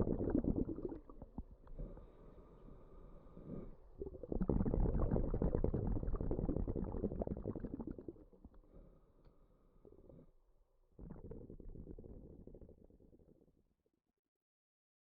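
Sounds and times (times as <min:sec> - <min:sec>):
regulator bubbling underwater: 0:00.0 - 0:01.6, 0:04.0 - 0:08.6.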